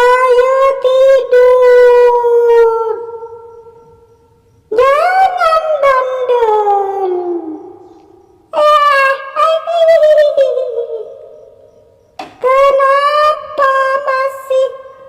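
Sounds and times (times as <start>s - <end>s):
eerie high wailing voice: 0.0s - 3.2s, 4.7s - 7.7s, 8.6s - 11.2s, 12.4s - 15.0s.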